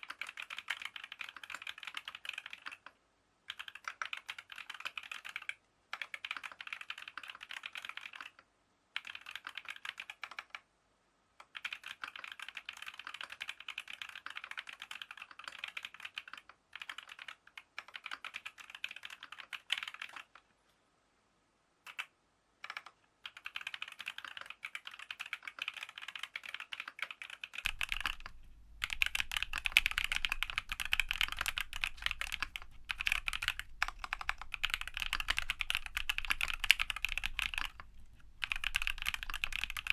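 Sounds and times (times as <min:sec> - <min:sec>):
fast typing on mechanical keyboard: 0:00.0 - 0:02.9, 0:03.5 - 0:08.4, 0:09.0 - 0:10.6, 0:11.4 - 0:20.4, 0:21.9 - 0:39.9.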